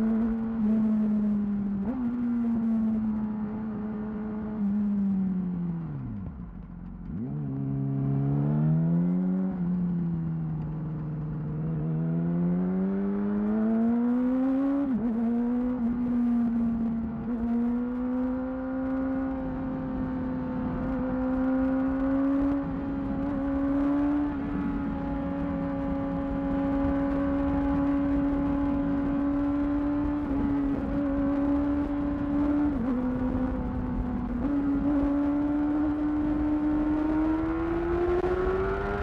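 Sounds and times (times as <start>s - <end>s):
motorcycle engine revving: 0.0s - 39.0s.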